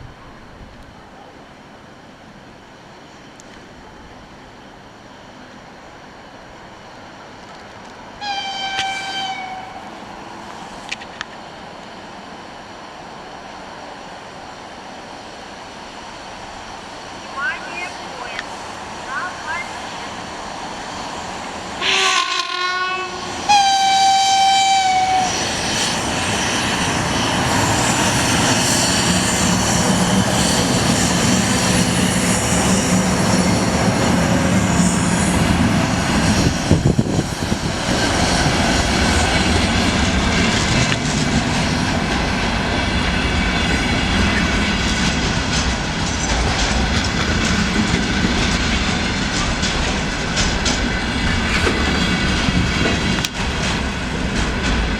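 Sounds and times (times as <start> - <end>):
train rumble and wheel clatter: 0.0 - 54.9
locomotive horn blasts: 8.2 - 9.9, 21.8 - 25.3.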